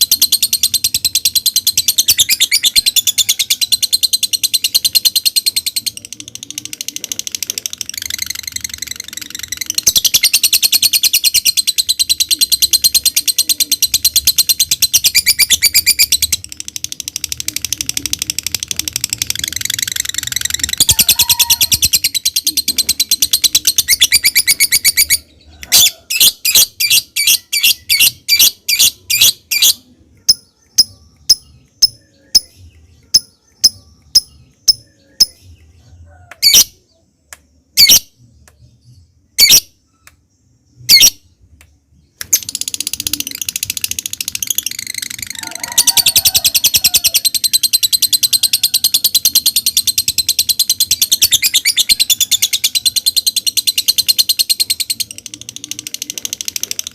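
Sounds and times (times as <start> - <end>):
lovebird high-pitched chattering trill: 0.0 - 35.6, 36.4 - 36.8, 37.8 - 38.1, 39.4 - 40.0, 40.8 - 41.3, 42.2 - 56.9
lovebird sharp chirps: 37.7 - 38.1.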